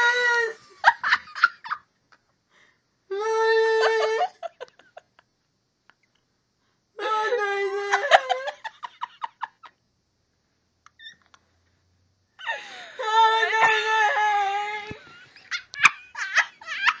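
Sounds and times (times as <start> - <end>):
person wailing loudly: 0.0 - 0.7, 3.1 - 4.5, 7.0 - 8.7, 12.4 - 15.2.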